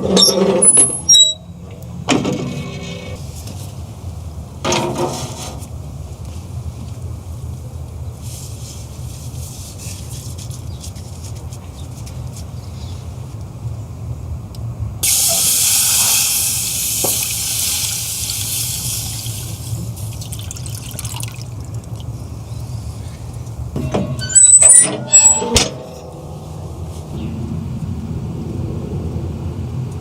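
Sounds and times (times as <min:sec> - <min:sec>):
metallic clattering and squeaks: 0:00.0 - 0:01.6, 0:23.7 - 0:27.2
sizzling on a hot grill: 0:15.0 - 0:20.2
steady low rumble: 0:21.4 - 0:30.0.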